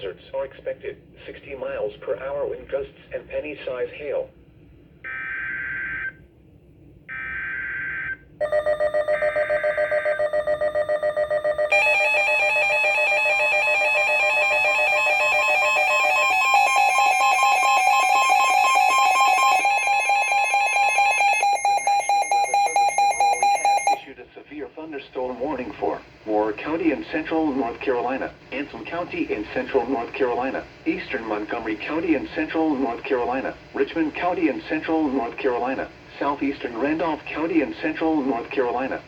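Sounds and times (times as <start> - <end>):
pulsing electronic alarm: 7.1 - 24.1.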